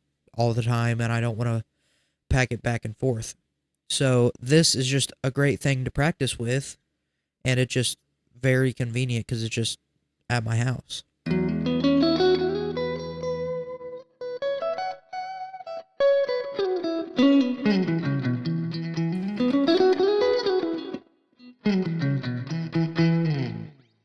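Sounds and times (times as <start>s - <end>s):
clean electric guitar licks: 11.3s - 13.9s, 17.0s - 23.8s.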